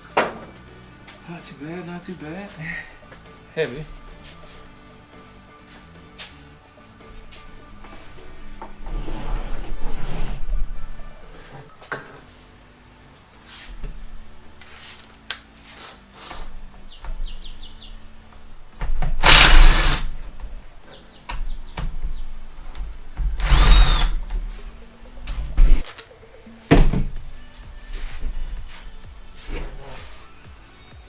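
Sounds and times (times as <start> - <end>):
handheld power tool running: 19.1 - 20.2, 23.3 - 24.4.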